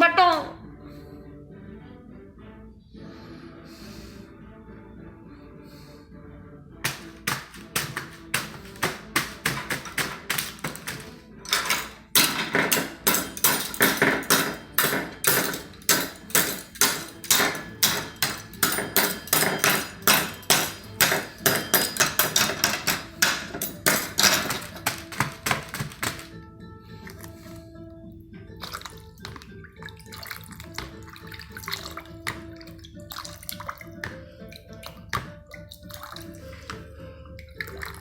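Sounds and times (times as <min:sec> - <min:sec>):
sharp taps or knocks: 0:06.9 - 0:11.1.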